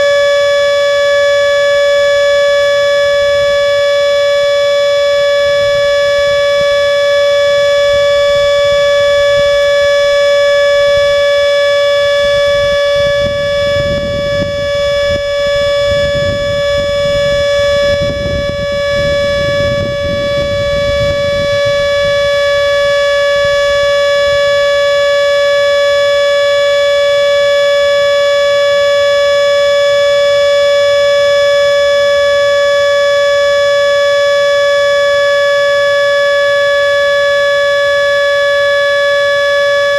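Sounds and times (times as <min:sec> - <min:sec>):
warning siren steady tone: 0:00.0 - 0:39.9
low rumbling noise: 0:07.4 - 0:24.5.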